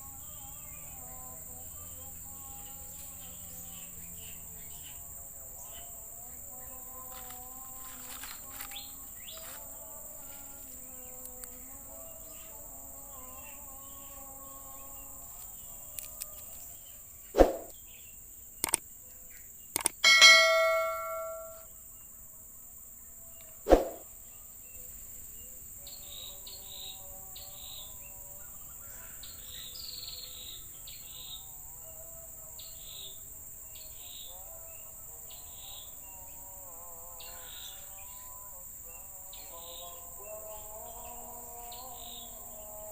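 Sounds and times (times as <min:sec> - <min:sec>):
insects droning: 0:00.0 - 0:42.9
sharp knocks: 0:19.8 - 0:21.6
ringing metallic clang: 0:20.0 - 0:21.7.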